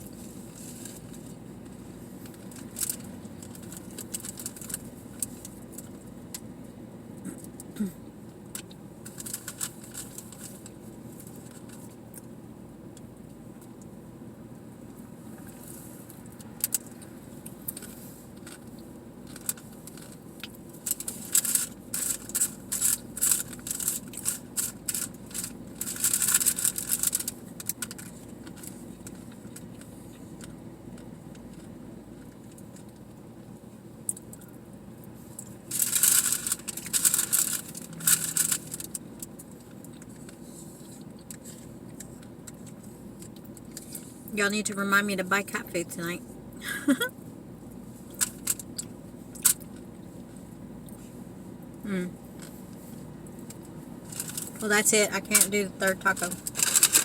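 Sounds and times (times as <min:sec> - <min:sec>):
crunching tacos: 0:00.0 - 0:06.5, 0:07.2 - 0:14.0, 0:14.8 - 0:44.3, 0:46.8 - 0:57.0
traffic hum: 0:00.0 - 0:57.0.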